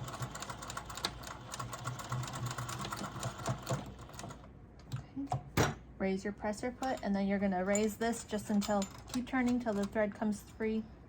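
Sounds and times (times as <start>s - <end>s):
electric sewing machine stitching: 0.0s - 4.4s.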